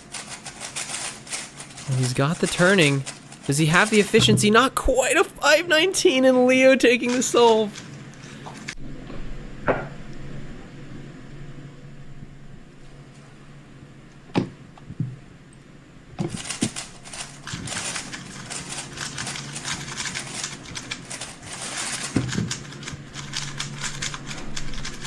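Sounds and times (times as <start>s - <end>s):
rapid plastic cube clicking: 0.0s - 4.3s, 16.2s - 25.0s.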